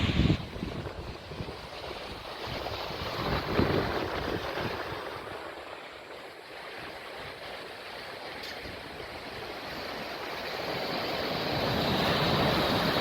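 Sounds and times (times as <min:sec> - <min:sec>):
wind gusting over microphone: 0:00.0 - 0:05.8
sea waves washing in: 0:00.0 - 0:13.0.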